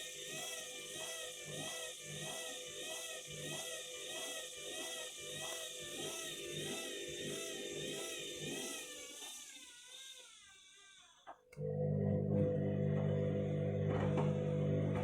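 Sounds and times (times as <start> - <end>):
washing machine spinning: 11.6 - 15.0.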